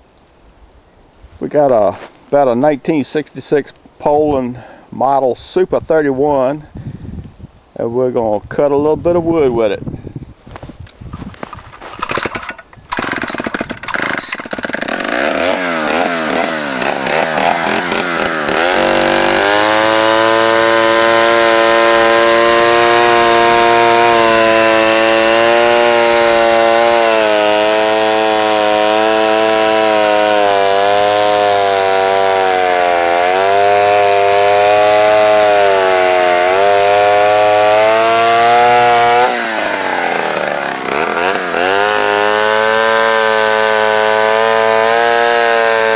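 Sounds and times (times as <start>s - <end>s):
chainsaw starter pulls: 11.2s - 20.6s, 35.8s - 45.2s
chainsaw engine revving: 11.5s - 45.9s.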